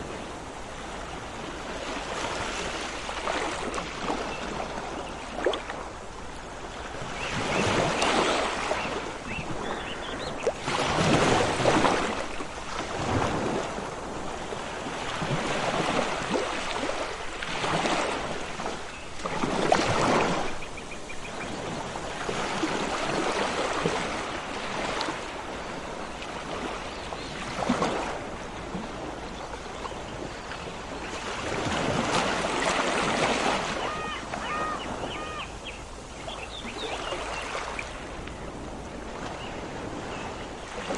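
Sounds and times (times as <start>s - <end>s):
sea waves washing in: 0.0s - 9.4s, 10.3s - 40.9s
bird chirping: 33.8s - 37.6s.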